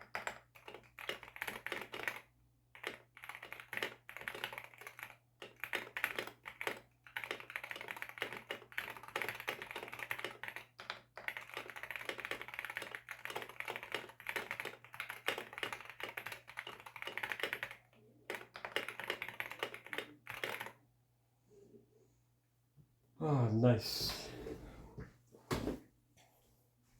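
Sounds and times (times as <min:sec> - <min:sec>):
mechanical keyboard typing: 0:00.0 - 0:20.8.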